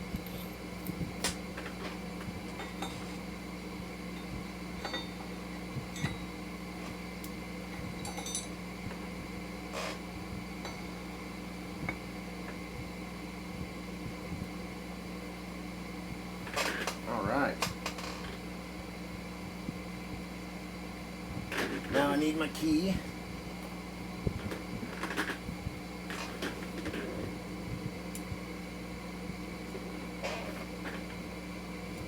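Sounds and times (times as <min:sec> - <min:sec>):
steady low hum: 0:00.0 - 0:32.0
light metal clinks: 0:08.0 - 0:08.6.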